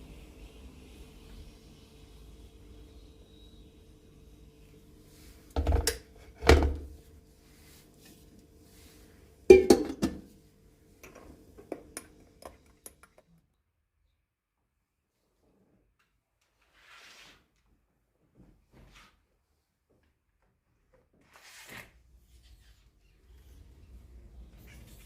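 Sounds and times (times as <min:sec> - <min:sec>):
faint steady hum: 0:00.0 - 0:14.4
dishes knocking and clinking: 0:05.6 - 0:06.8, 0:09.5 - 0:10.3, 0:11.0 - 0:13.3.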